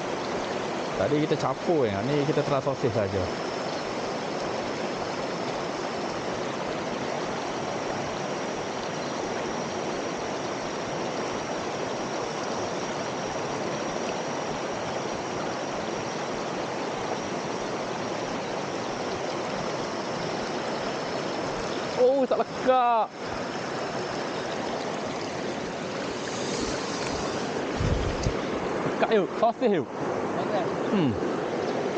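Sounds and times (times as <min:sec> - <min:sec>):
waterfall rushing: 0:00.0 - 0:31.9.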